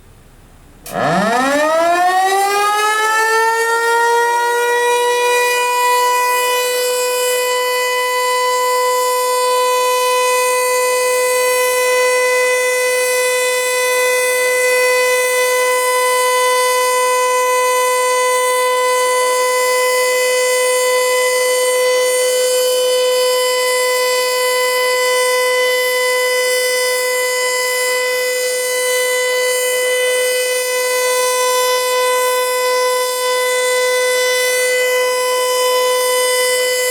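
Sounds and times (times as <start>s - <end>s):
outdoor warning siren wailing: 0.8s - 36.9s.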